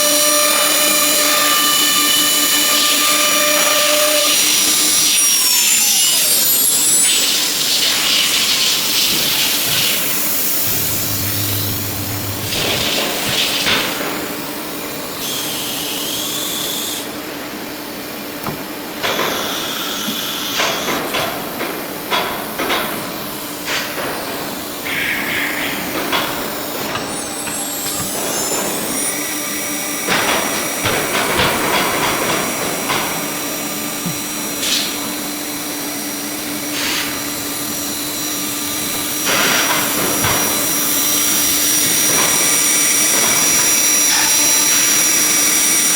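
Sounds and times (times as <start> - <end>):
high spindle whine: 0.0 - 17.1
cnc router humming: 0.0 - 45.9.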